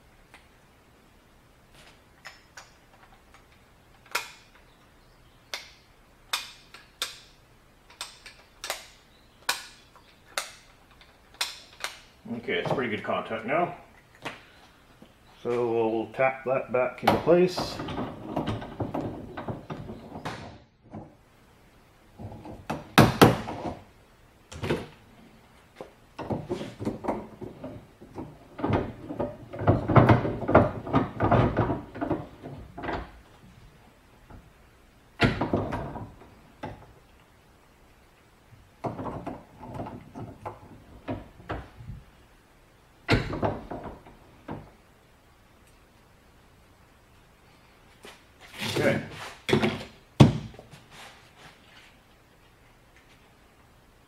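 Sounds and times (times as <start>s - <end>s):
hand tools knocking and rattling: 26.2s - 33.2s.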